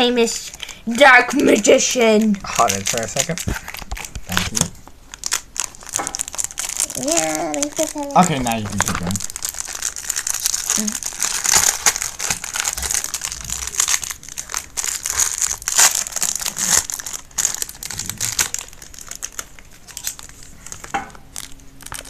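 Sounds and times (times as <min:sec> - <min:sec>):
foil wrapper crinkling: 0:00.0 - 0:22.0.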